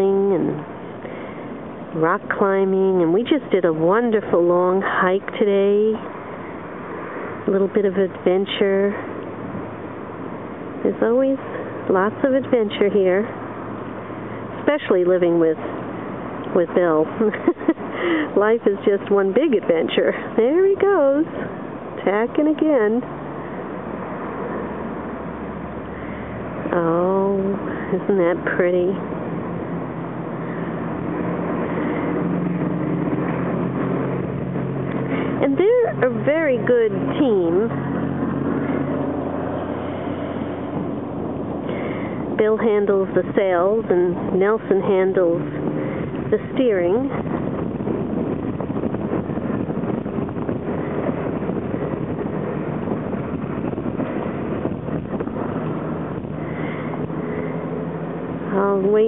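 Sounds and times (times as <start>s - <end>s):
wind blowing across microphone: 0.0s - 59.0s
motor engine running: 19.7s - 59.0s.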